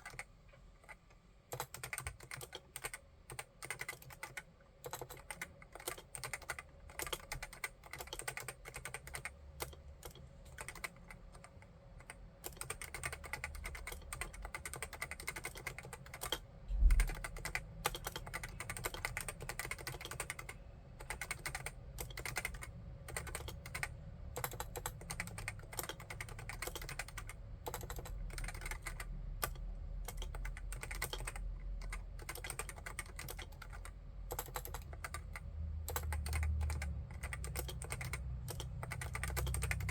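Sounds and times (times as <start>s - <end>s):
keyboard typing: 0.0s - 39.9s
heavy low thump: 16.7s - 17.1s.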